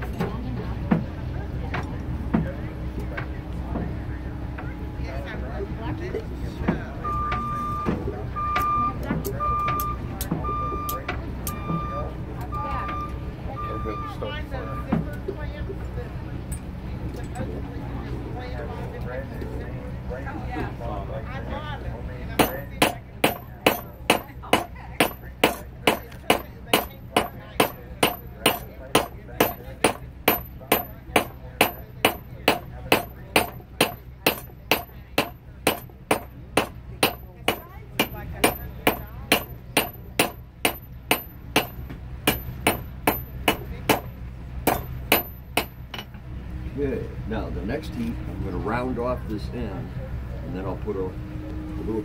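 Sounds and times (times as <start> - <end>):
hammer ringing on anvil: 22.4 - 44.1, 44.7 - 46.1.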